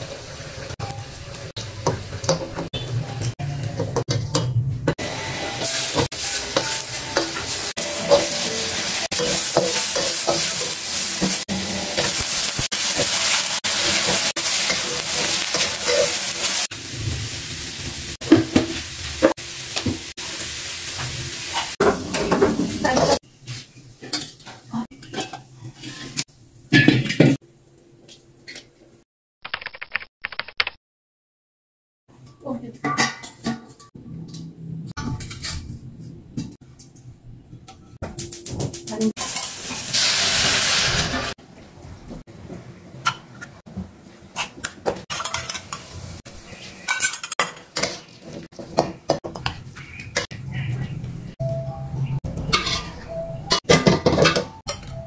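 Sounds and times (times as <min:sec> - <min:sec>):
food sizzling in a frying pan: 0:05.0 - 0:24.8, 0:38.9 - 0:41.4
utensil scraping a pan: 0:52.4 - 0:53.1.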